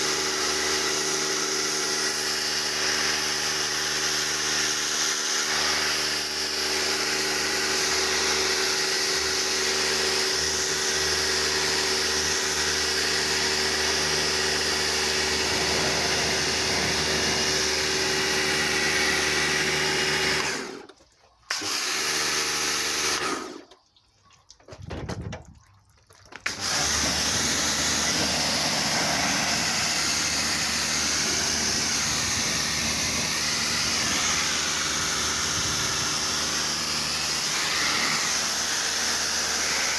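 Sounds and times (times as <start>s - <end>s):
pressure washer motor humming: 0.0s - 20.9s, 21.5s - 23.6s, 26.4s - 39.9s
water jet spraying: 13.8s - 20.7s, 26.5s - 36.8s.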